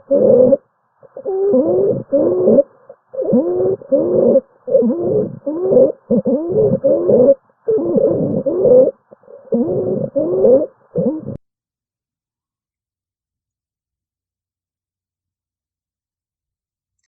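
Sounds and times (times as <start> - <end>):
harsh stridor breathing: 1.2 - 11.4.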